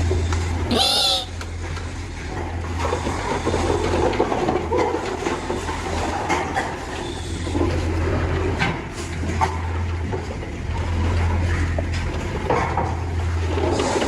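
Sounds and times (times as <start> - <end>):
steady low hum: 0.0 - 14.0
piglets squealing: 0.7 - 1.4.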